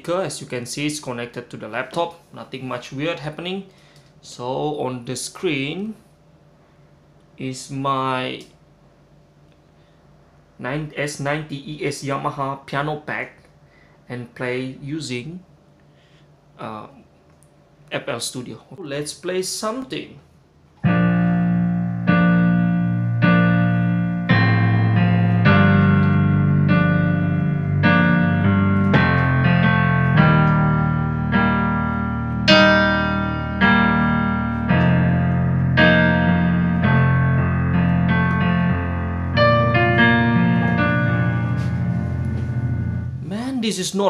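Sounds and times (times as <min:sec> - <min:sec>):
piano chords over bass notes: 0:20.8 - 0:43.6.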